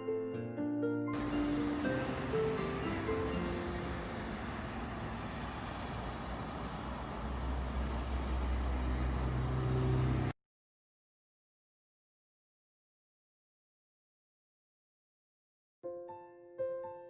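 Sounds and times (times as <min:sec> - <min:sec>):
faint high pulsing: 0:01.2 - 0:10.3.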